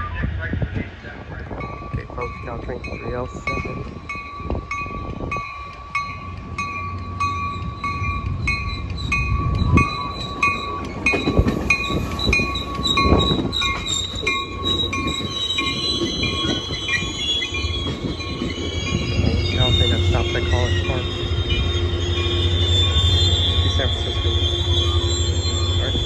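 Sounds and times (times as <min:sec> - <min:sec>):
train rumbling: 0:00.0 - 0:26.0
train bell ringing: 0:01.2 - 0:26.0
high wheel squeal: 0:06.1 - 0:26.0.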